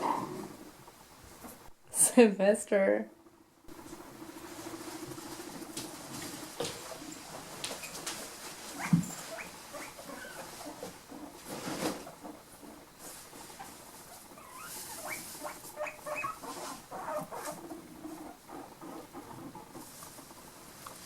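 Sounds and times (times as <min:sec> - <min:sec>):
rustle: 0:03.7 - 0:21.0
guinea pig squeaking: 0:07.7 - 0:20.4.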